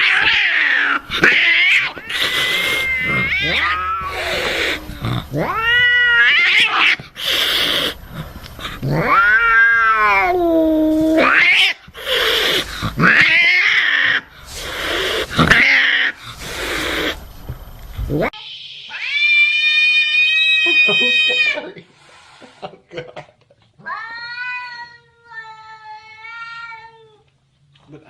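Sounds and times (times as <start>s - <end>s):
cat yowling: 0.0s - 8.0s, 8.8s - 17.2s, 18.3s - 21.6s
cat hissing: 0.0s - 17.3s.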